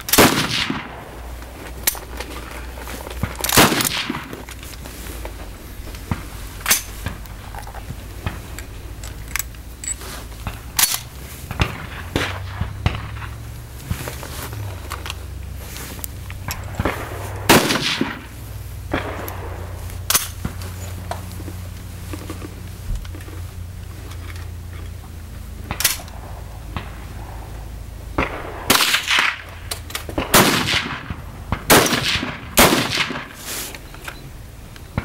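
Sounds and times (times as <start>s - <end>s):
rifle shots: 0.0s - 5.1s, 5.8s - 14.8s, 16.4s - 22.1s, 25.6s - 33.5s.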